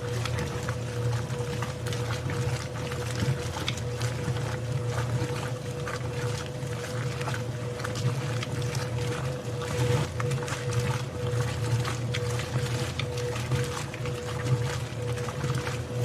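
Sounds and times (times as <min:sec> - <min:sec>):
washing machine humming: 0:00.0 - 0:16.0.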